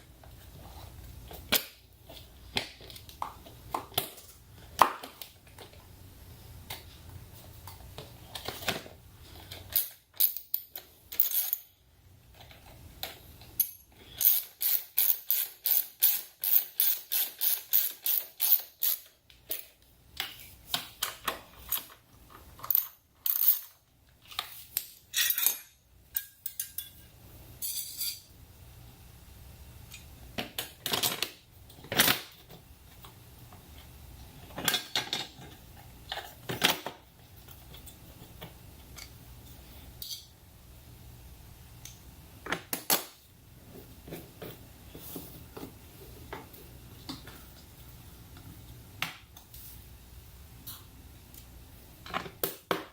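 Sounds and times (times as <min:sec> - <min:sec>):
metal parts and tools clinking: 0:09.4 - 0:11.8, 0:13.6 - 0:19.8, 0:22.6 - 0:28.3, 0:40.0 - 0:40.3.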